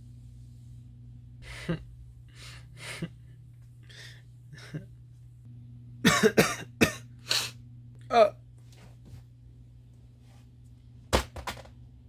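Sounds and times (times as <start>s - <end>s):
low hum: 0.0s - 12.0s
person gasping breaths: 1.4s - 4.8s.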